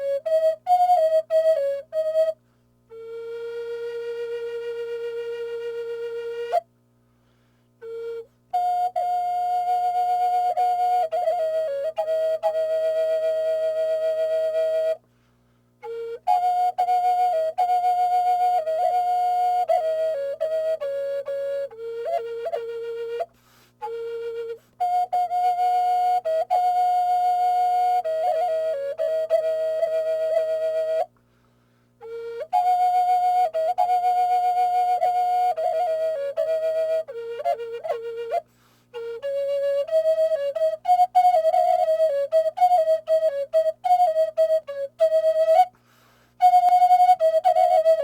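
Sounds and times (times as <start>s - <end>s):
flute music: 0.0s - 6.6s, 7.8s - 15.0s, 15.8s - 31.1s, 32.0s - 45.7s, 46.4s - 48.0s.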